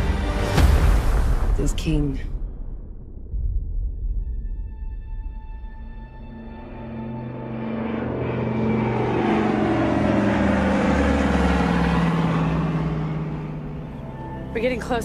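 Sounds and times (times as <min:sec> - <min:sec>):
vehicle passing by: 0:06.4 - 0:15.0.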